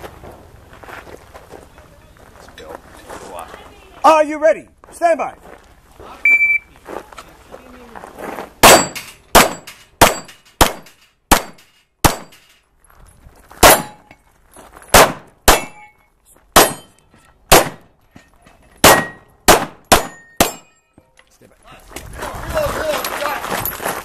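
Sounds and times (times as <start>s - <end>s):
pistol shots: 8.6s - 12.4s, 13.6s - 14.0s, 14.9s - 15.9s, 16.6s - 17.9s, 18.8s - 20.7s
steel targets ringing: 8.6s - 12.6s, 13.6s - 14.2s, 15.5s - 17.2s, 18.2s - 21.2s.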